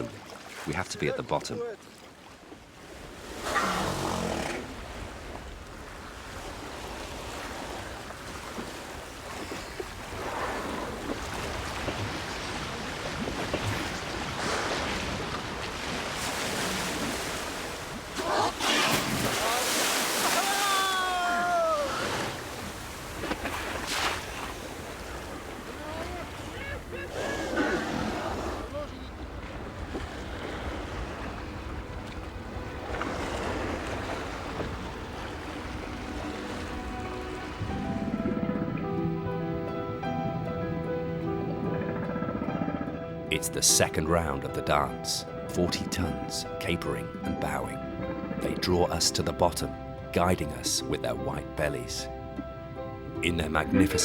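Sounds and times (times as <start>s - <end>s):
water sloshing: 0.0s - 3.5s, 4.3s - 39.1s
small splashes: 7.4s - 31.4s.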